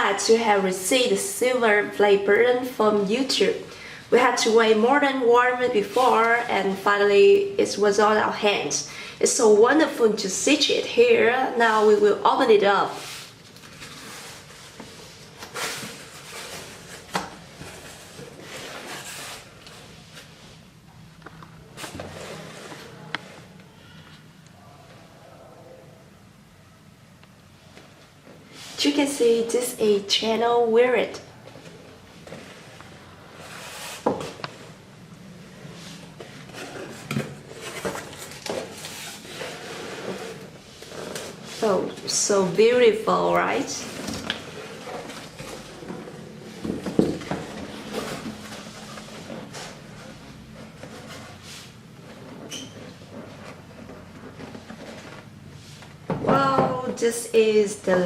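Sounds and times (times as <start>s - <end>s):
packaging rustling: 36.2s - 41.5s.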